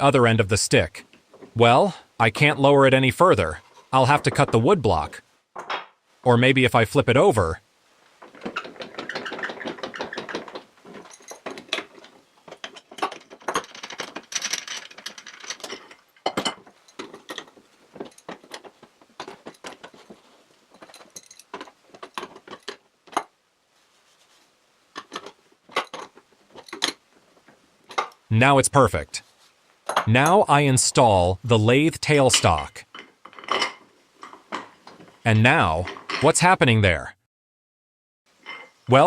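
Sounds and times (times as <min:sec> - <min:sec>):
metal fittings and wood clacking: 0:08.2 - 0:23.3, 0:24.9 - 0:28.2, 0:32.3 - 0:35.2, 0:35.8 - 0:36.3.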